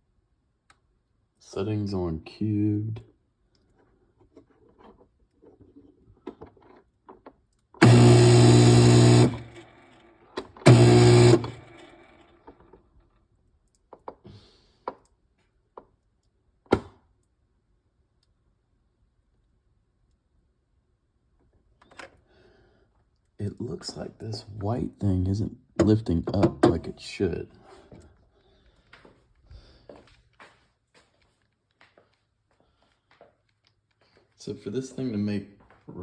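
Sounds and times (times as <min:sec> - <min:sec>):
ice dispenser motor hum: 0:07.8 - 0:12.4.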